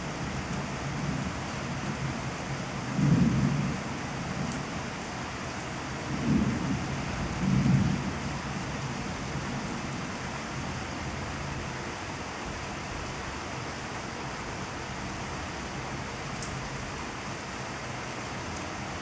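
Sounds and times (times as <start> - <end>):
steady rain hiss: 0.0 - 19.0
low thunder rumbles: 2.8 - 4.4, 6.0 - 9.8.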